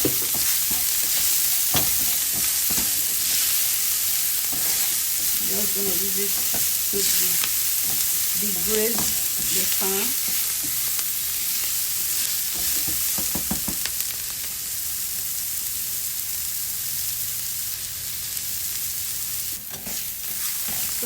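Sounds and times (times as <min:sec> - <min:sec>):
stirring knocks: 0:00.0 - 0:03.1, 0:12.6 - 0:13.8
onions sizzling in a frying pan: 0:00.0 - 0:21.0.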